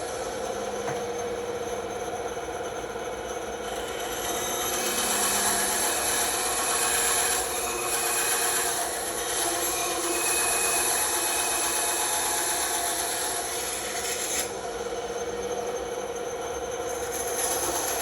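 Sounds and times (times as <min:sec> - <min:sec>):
bandsaw cutting plywood: 0:03.6 - 0:14.6
saw motor humming: 0:03.8 - 0:14.7.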